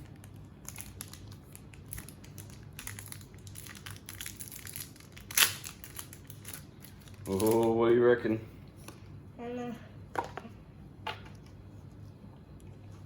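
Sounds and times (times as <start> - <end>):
foil wrapper crinkling: 0.0 - 7.8.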